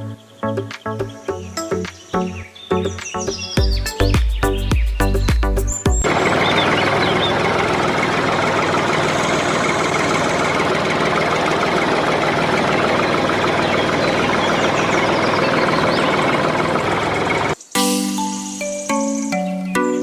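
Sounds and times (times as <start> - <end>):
small motor running: 6.1 - 17.6.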